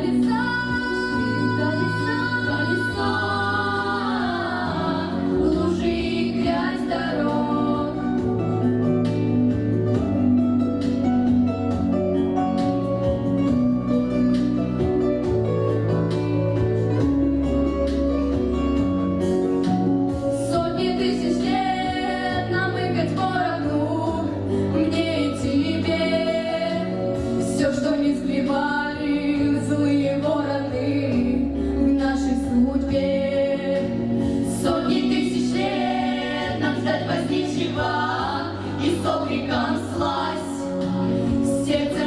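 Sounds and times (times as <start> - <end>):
vocal group singing: 0.0 - 9.7, 20.1 - 42.0
steady bass notes: 0.0 - 42.0.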